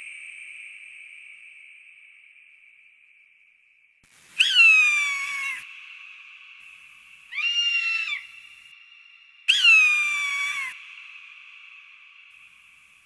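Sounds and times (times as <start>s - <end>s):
falcon calling: 4.4s - 5.7s, 7.3s - 8.4s, 9.5s - 11.0s.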